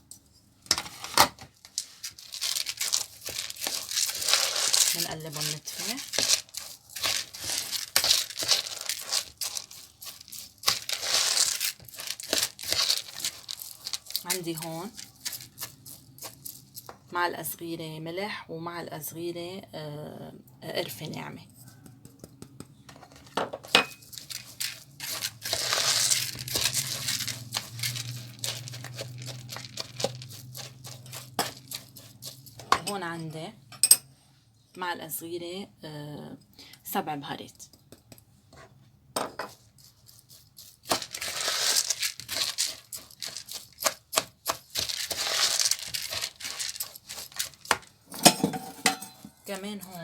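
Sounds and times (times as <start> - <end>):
packet crinkling and rustling: 0.9 - 17.0, 24.0 - 32.6, 39.8 - 47.9
meat and rice squelching in a bowl: 1.5 - 17.3, 23.9 - 33.2, 39.4 - 50.0.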